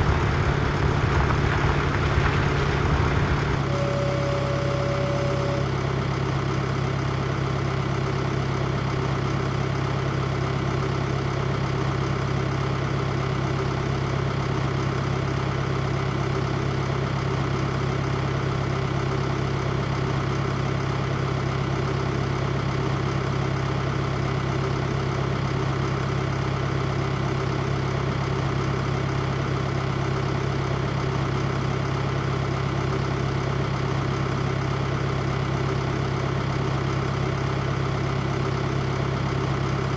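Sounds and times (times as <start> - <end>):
tractor engine running: 0.0 - 8.5.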